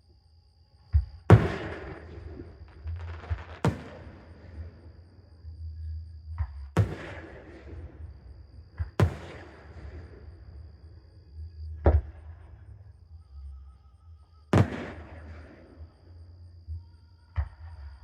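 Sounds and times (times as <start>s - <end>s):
fireworks bursting with echo: 1.2s - 5.1s, 6.7s - 11.0s, 14.5s - 16.0s.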